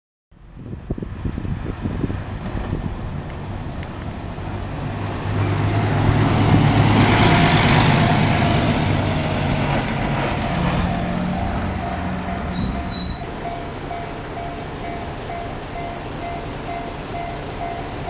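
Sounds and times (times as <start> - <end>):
large vehicle passing: 1.3 - 13.8
level-crossing warning bells: 4.8 - 18.0.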